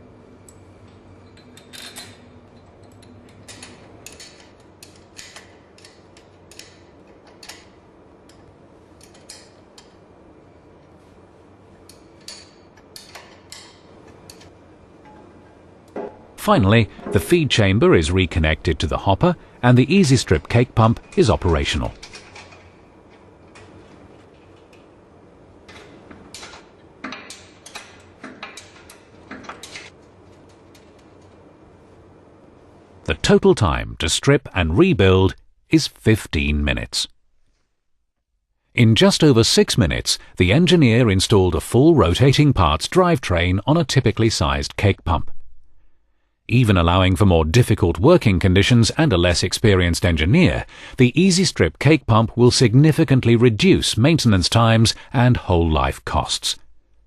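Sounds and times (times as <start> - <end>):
faint steady hum: 0.0 - 57.0
clicks and knocks of metal parts: 0.4 - 10.0, 11.8 - 15.3, 20.4 - 24.9, 25.7 - 31.4.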